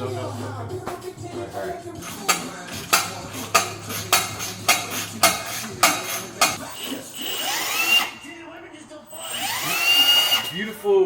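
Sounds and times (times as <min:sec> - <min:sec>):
power tool whirring: 0:02.0 - 0:08.4, 0:09.1 - 0:10.6.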